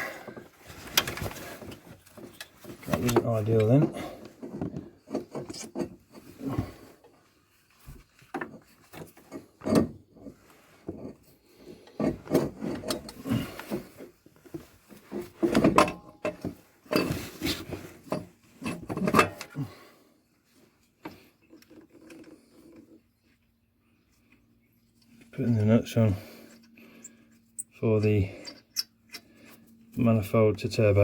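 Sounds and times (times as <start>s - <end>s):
metal parts and tools scraping: 0.8s - 6.5s.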